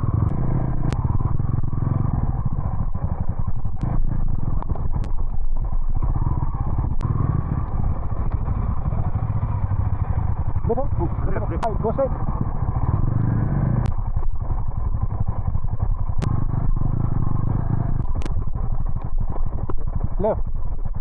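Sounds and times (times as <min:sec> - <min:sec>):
motorcycle engine running: 0:00.0 - 0:21.0
sharp clicks: 0:00.2 - 0:01.0, 0:03.8 - 0:05.3, 0:13.8 - 0:14.2, 0:15.8 - 0:20.2.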